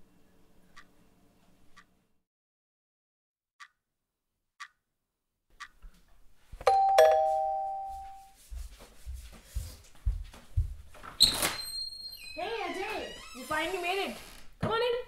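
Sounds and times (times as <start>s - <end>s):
clock ticking: 1.7s - 1.9s, 3.6s - 3.8s, 4.6s - 4.8s, 5.6s - 5.9s
two-tone doorbell chime: 6.7s - 8.4s.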